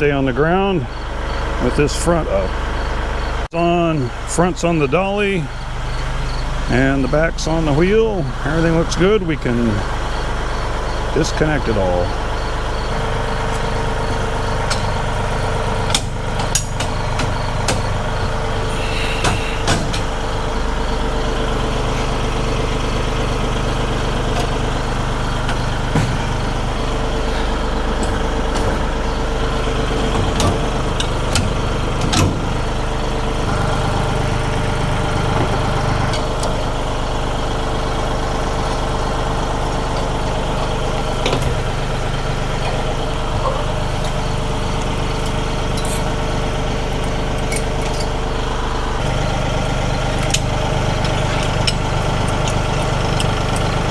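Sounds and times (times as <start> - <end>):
tractor engine idling: 0.0 - 53.9
metal clanks and knocks: 24.3 - 32.7, 39.6 - 49.0.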